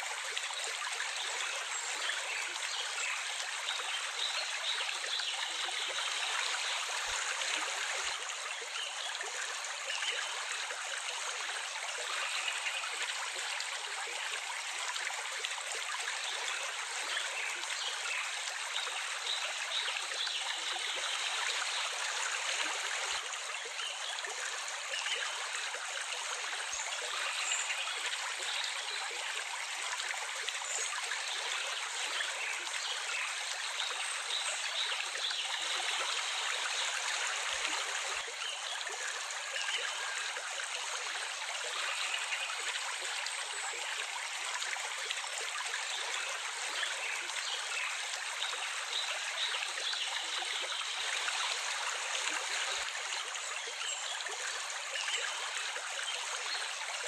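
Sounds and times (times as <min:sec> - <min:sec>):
stream water running: 0:00.0 - 0:57.0.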